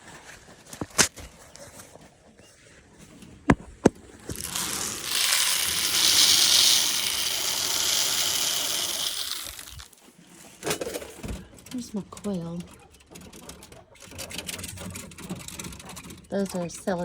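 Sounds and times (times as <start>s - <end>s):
water running: 4.3s - 10.0s.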